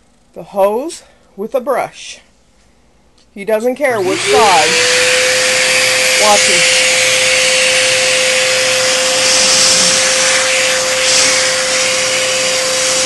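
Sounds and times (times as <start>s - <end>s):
vacuum cleaner running: 3.8s - 13.0s.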